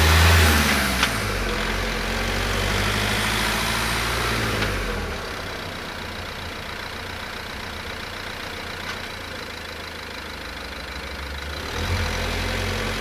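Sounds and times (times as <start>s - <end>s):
diesel van engine idling: 4.0s - 11.6s.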